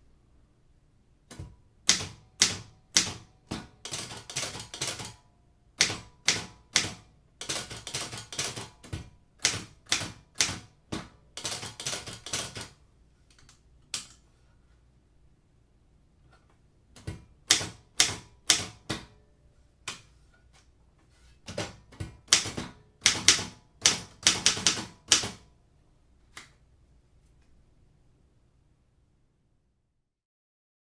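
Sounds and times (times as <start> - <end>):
typewriter keys striking: 1.9 - 5.2, 5.8 - 12.8, 21.5 - 25.4.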